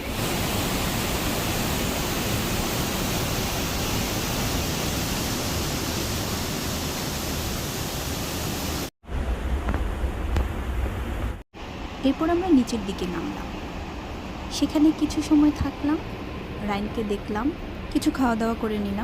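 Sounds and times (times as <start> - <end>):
large waterfall rushing: 0.0 - 8.9.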